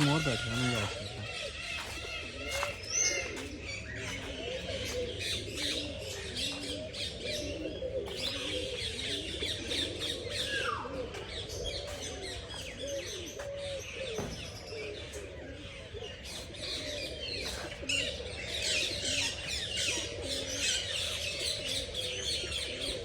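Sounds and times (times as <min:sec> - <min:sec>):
small birds chirping: 0:00.0 - 0:15.2
pigeons cooing: 0:00.0 - 0:23.0.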